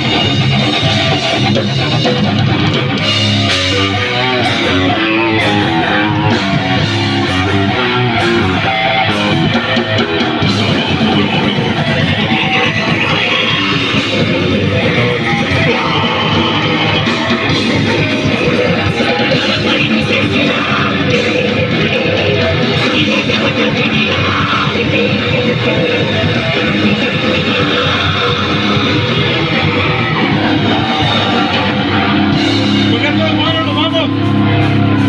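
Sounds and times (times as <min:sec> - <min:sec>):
heavy rock music: 0:00.0 - 0:35.0.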